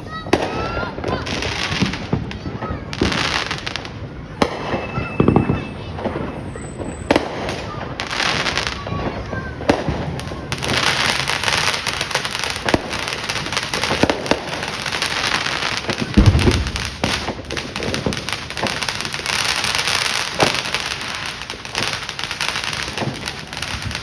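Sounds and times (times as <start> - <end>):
fireworks crackling and popping: 0.0 - 24.0
loud low firework boom: 16.0 - 18.8.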